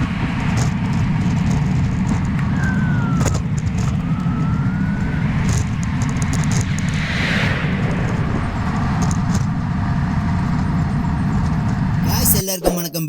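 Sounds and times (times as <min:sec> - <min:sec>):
road vehicle rumble: 0:00.0 - 0:12.1
faint high squeals: 0:02.0 - 0:12.1.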